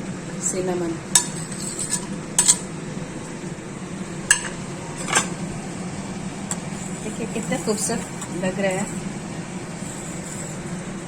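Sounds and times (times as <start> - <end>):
steady low hum: 0.0 - 11.0
utensils clinking against pot: 1.2 - 2.7, 4.3 - 5.4.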